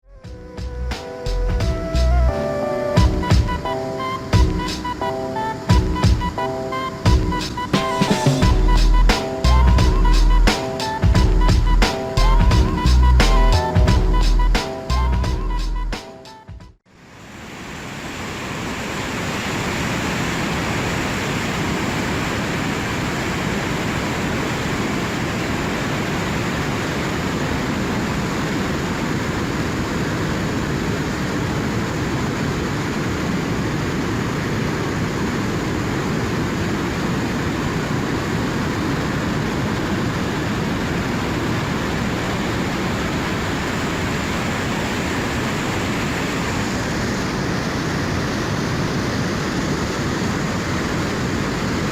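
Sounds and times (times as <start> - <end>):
river rushing: 16.9 - 51.9.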